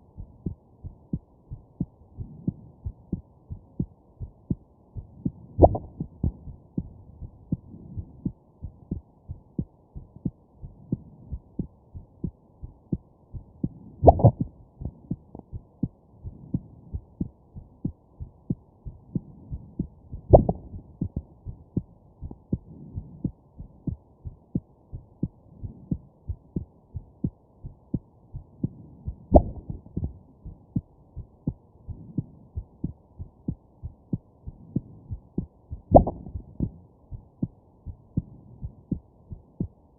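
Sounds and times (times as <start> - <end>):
muffled heartbeat: 0.0 - 39.9.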